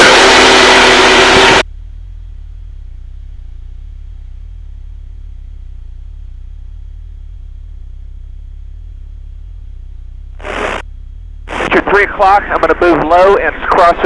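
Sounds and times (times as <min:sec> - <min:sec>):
low aircraft hum: 0:00.0 - 0:14.0
radio hiss with steady tone: 0:10.4 - 0:10.8, 0:11.5 - 0:14.0.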